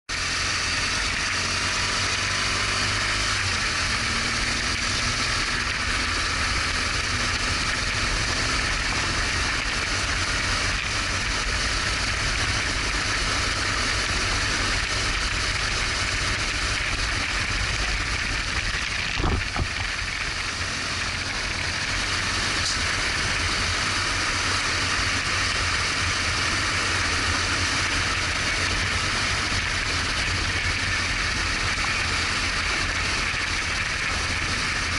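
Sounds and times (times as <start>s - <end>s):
motorcycle engine running: 0.1s - 34.9s
wind and road noise: 0.1s - 34.9s
sharp knock: 19.1s - 19.8s.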